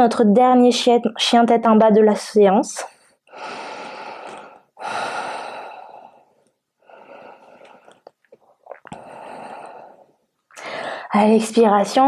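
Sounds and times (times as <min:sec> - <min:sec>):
woman breathing slowly: 0:02.9 - 0:08.1, 0:08.9 - 0:11.1.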